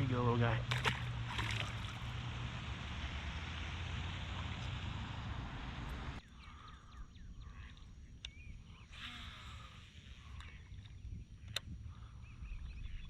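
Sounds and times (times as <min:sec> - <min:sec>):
birds chirping: 0:00.0 - 0:13.0
outdoor ambience: 0:00.0 - 0:13.0.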